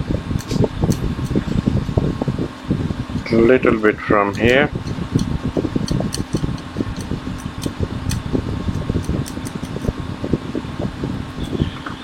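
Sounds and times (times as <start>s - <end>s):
electric fan hum: 0.0s - 12.0s
tool scratching circuit board: 4.0s - 9.9s.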